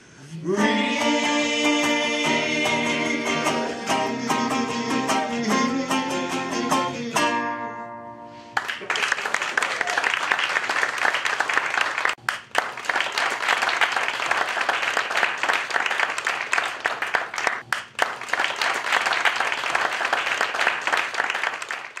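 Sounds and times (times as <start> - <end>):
audience applauding: 8.6 - 22.0.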